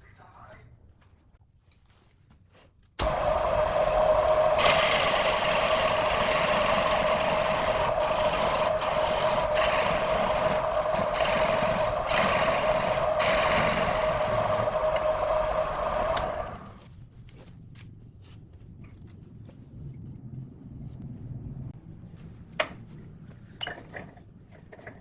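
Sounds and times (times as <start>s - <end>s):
turning tool scraping wood: 3.0s - 16.9s
wood lathe motor whine: 3.0s - 16.9s.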